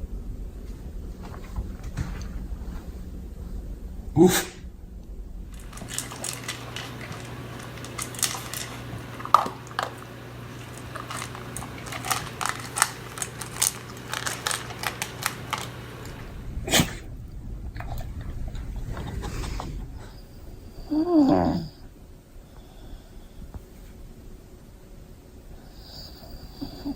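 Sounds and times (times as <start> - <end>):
low hum: 0.0 - 26.5
dog chewing: 5.4 - 20.3.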